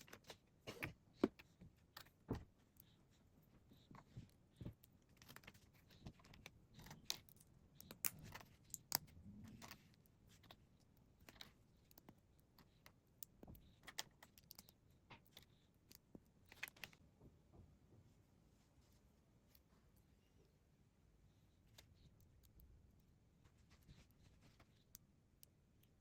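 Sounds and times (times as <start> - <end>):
plastic lego pieces clicking: 11.2 - 16.9.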